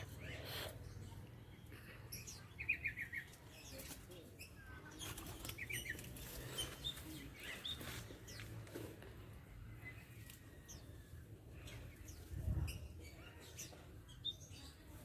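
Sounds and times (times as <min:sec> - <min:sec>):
birds flapping wings: 0:04.9 - 0:06.9.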